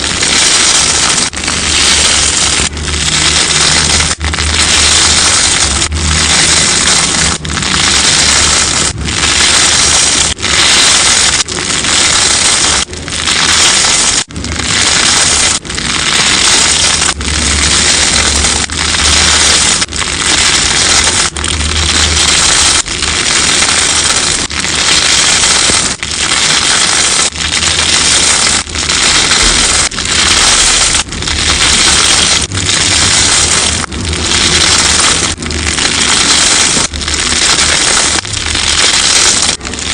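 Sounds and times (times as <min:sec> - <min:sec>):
slime crackling and scraping: 0:00.0 - 0:39.9.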